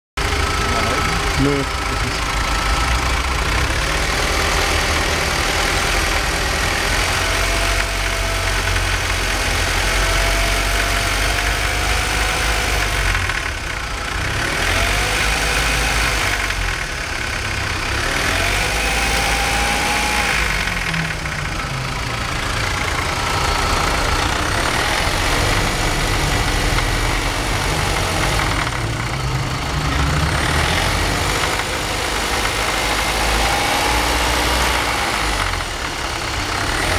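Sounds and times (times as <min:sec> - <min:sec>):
car engine idling unevenly: 0:00.2 - 0:36.9.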